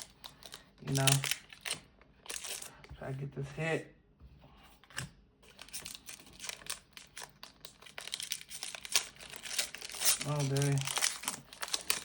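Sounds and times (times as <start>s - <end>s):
foil wrapper crinkling and tearing: 0.0s - 2.8s, 5.5s - 12.0s.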